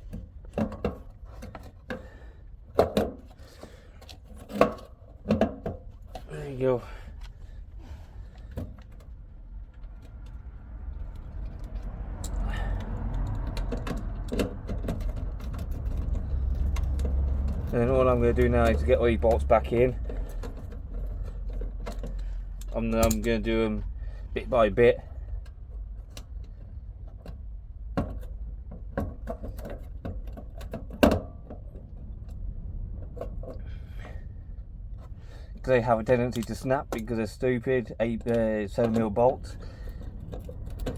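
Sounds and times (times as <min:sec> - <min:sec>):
clicks and knocks of handled parts: 0:00.0 - 0:34.2, 0:35.0 - 0:40.9
low rumble: 0:06.0 - 0:28.7, 0:31.5 - 0:36.3
small metallic clicks and taps: 0:11.0 - 0:23.4, 0:38.2 - 0:39.4.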